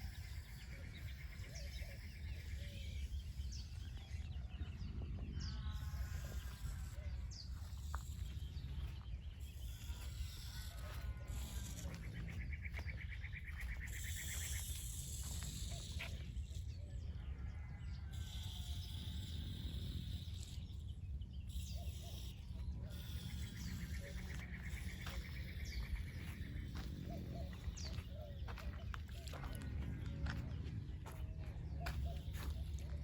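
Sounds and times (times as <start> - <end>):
steady low rumble: 0.0 - 17.9, 18.8 - 33.0
birds chirping: 0.0 - 33.0.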